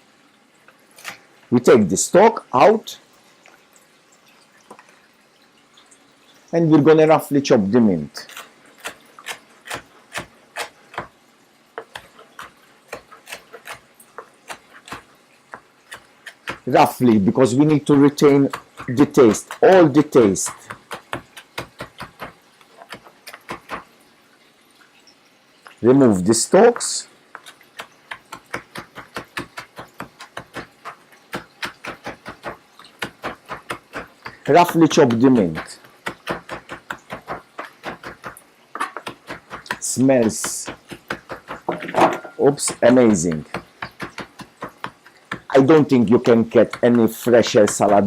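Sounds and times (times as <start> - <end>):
knife chopping on a board: 8.3 - 11.1, 11.8 - 16.7, 17.6 - 23.8, 27.4 - 48.0.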